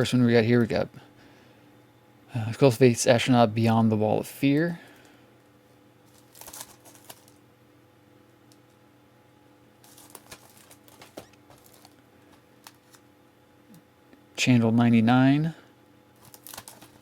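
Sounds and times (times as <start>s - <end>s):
low steady hum: 0.0s - 17.0s
plastic cases clicking and rustling: 9.8s - 12.0s, 16.2s - 17.0s.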